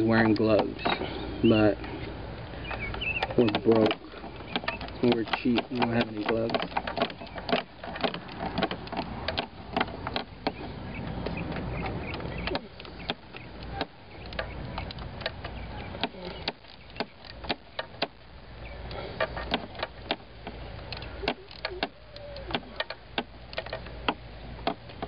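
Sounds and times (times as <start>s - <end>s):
hand tools clicking on metal: 2.7s - 10.6s, 18.9s - 25.0s.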